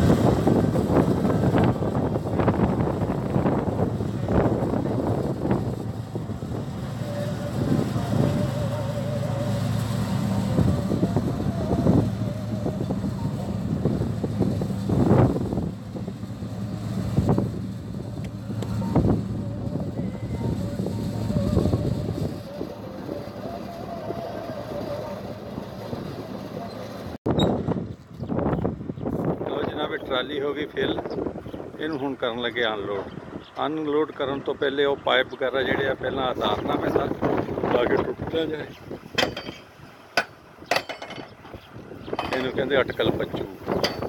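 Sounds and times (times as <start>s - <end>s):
tractor engine running: 0.0s - 24.2s
high wavering whine: 0.0s - 26.7s.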